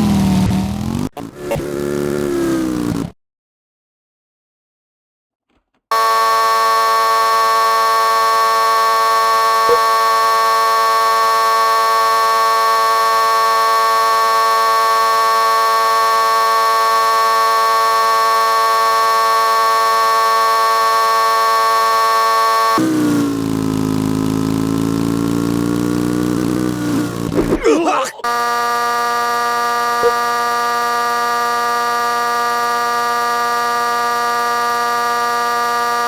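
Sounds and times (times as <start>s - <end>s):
alarm-like buzzing tone: 5.9s - 22.8s, 28.2s - 36.0s.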